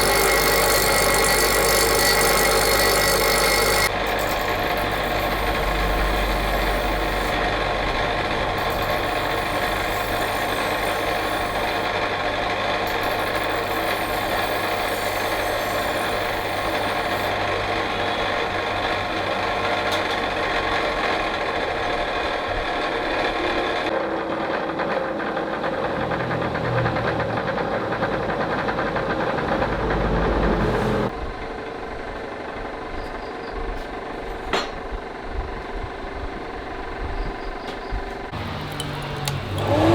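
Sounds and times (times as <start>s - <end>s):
machine motor humming: 0.0s - 21.9s, 38.3s - 39.9s.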